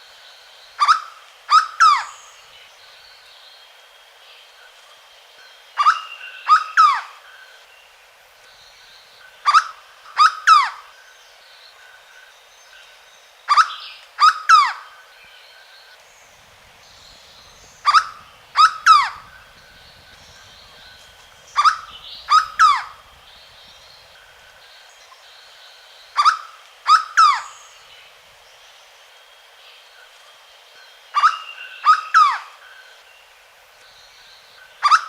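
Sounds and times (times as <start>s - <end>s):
bird calling falling notes: 16.3s - 24.6s.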